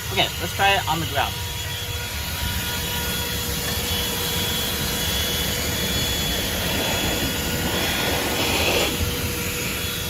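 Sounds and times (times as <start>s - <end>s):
handheld vacuum motor whine: 0.0s - 10.0s
rushing air: 2.2s - 10.0s.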